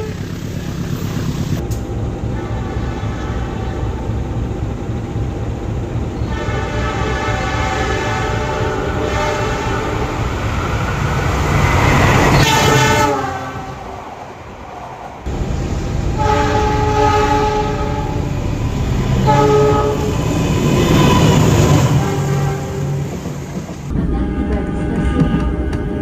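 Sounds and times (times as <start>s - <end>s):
running train rumble: 0.0s - 26.0s
train air horn chord: 6.2s - 10.1s, 12.3s - 13.8s, 16.2s - 18.3s, 19.2s - 20.2s.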